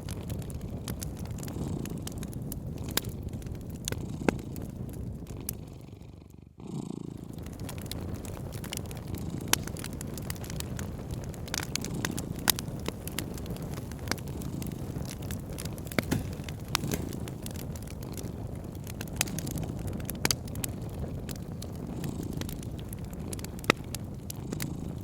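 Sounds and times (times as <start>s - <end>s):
cat purring: 0.0s - 25.0s
crackling wood fire: 0.0s - 25.0s.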